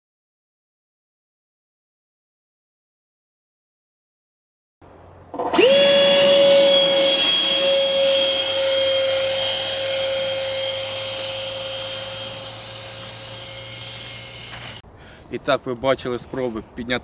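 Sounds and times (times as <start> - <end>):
electric ducted fan whine: 4.8 - 17.0.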